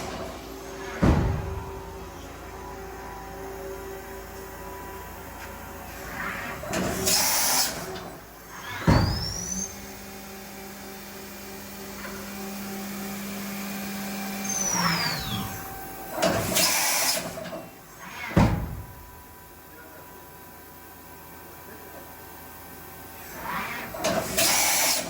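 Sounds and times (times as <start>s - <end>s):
machine clunks: 0.0s - 2.0s
machine spindle whine: 11.6s - 18.4s.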